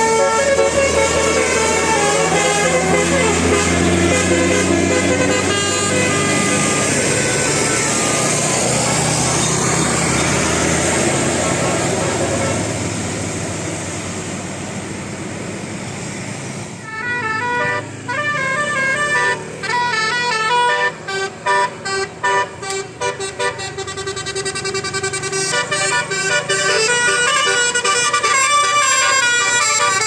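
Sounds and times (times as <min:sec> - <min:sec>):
bus musical horn playing tune: 0:00.0 - 0:08.6, 0:09.4 - 0:12.9, 0:16.8 - 0:30.0
steady vehicle noise: 0:00.0 - 0:30.0.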